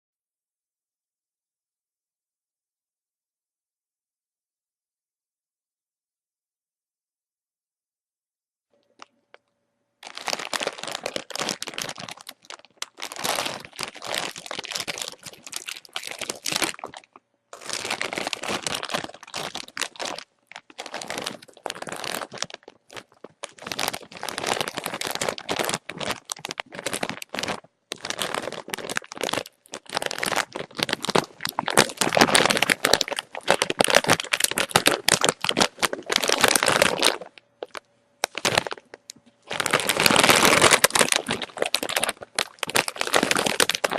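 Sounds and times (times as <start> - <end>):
chip bag crinkling: 10.0 - 43.9
potato chips crunching: 10.0 - 43.9.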